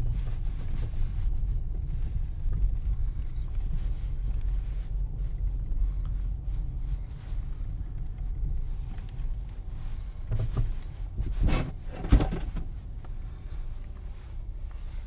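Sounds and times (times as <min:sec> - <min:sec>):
low road rumble: 0:00.0 - 0:15.0
suspension clunking: 0:10.3 - 0:13.2.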